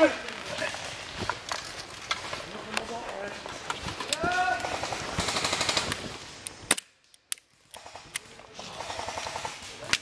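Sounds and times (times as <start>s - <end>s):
automatic airsoft fire: 4.6s - 6.0s.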